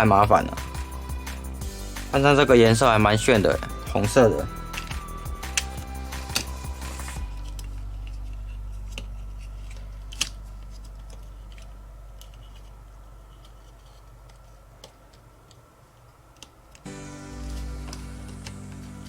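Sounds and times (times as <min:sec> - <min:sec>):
background music: 0:00.0 - 0:08.4, 0:16.9 - 0:19.0.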